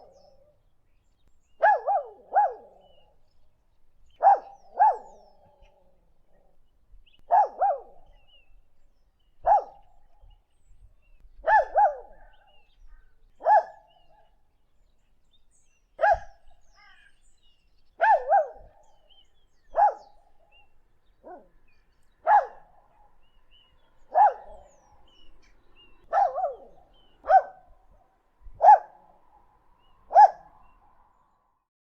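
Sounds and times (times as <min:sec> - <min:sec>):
puppy barking: 0:01.6 - 0:03.0, 0:04.2 - 0:05.8, 0:07.3 - 0:08.1, 0:09.4 - 0:09.9, 0:11.4 - 0:12.4, 0:13.4 - 0:13.9, 0:16.0 - 0:16.4, 0:18.0 - 0:18.8, 0:19.7 - 0:20.2, 0:21.2 - 0:21.5, 0:22.2 - 0:23.2, 0:24.1 - 0:25.2, 0:26.1 - 0:27.7, 0:28.6 - 0:29.0, 0:30.1 - 0:30.5.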